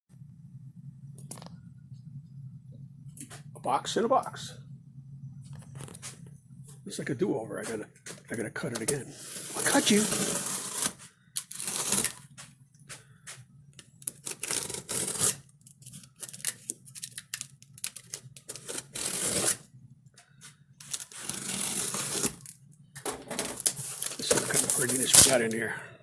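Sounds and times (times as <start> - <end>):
tape and cardboard tearing: 9.3 - 12.3, 14.1 - 15.4, 16.0 - 19.6, 20.8 - 22.5, 23.4 - 25.4.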